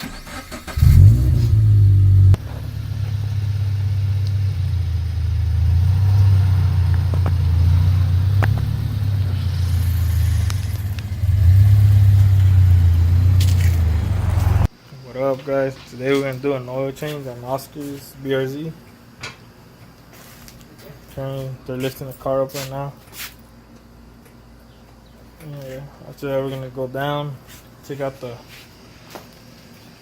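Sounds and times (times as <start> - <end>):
car engine starting and idling: 0.0 - 14.7.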